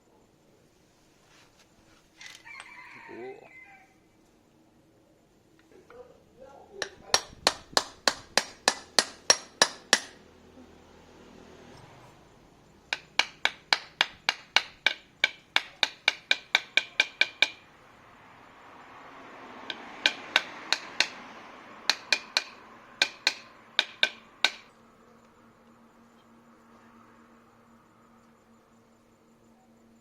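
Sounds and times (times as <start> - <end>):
hammer striking metal: 6.8 - 10.2, 12.9 - 17.6, 19.6 - 21.2, 21.9 - 24.7.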